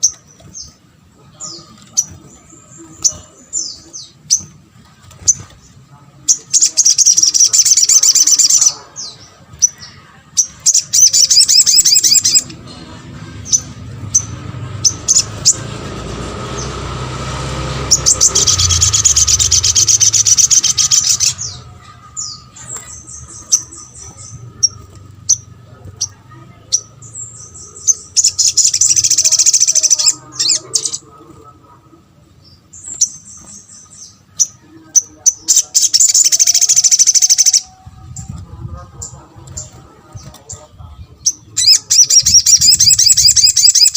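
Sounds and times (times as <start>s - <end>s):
bird calling in rattling chirps: 17.8s - 31.0s, 32.8s - 37.7s, 41.3s - 43.9s.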